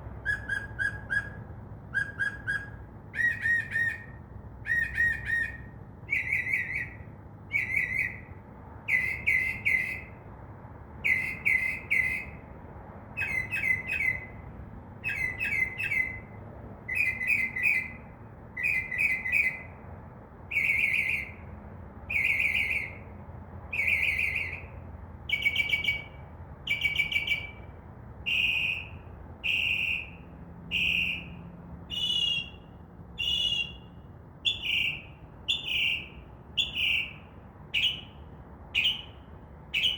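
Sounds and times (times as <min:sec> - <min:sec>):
mockingbird singing: 0:00.2 - 0:10.2, 0:11.0 - 0:12.4, 0:13.2 - 0:14.4, 0:15.0 - 0:16.3, 0:16.9 - 0:18.0, 0:18.6 - 0:19.8, 0:20.5 - 0:21.4, 0:22.1 - 0:23.0, 0:23.7 - 0:24.7, 0:25.3 - 0:27.7, 0:31.9 - 0:39.9.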